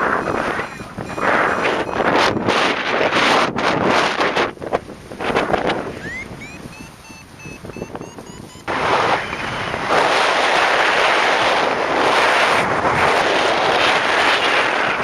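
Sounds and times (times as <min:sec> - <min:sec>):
variometer rising beeps: 0:00.0 - 0:03.6, 0:05.9 - 0:09.6
wind buffeting microphone: 0:00.0 - 0:15.0.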